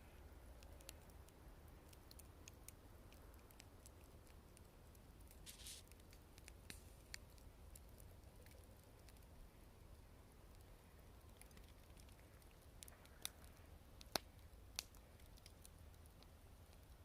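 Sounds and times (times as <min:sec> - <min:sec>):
wood fire crackling: 0:00.0 - 0:17.0
brief hiss: 0:05.4 - 0:05.9.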